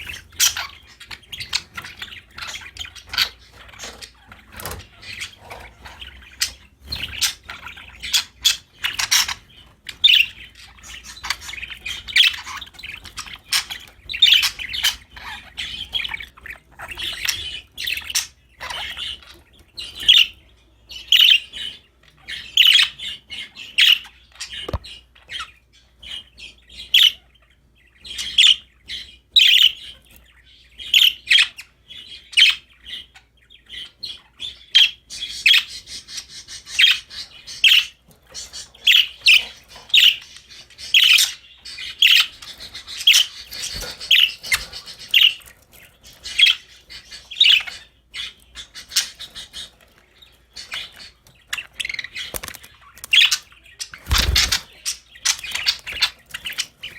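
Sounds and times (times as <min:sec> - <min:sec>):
budgerigars chirping: 0:00.0 - 0:56.9.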